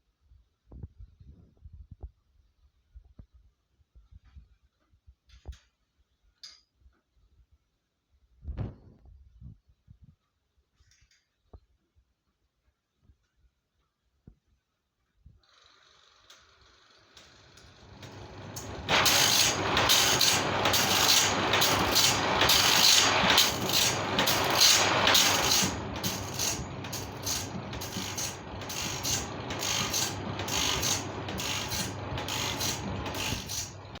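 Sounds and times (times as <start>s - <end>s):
saw sharpening machine grinding: 17.5s - 34.0s.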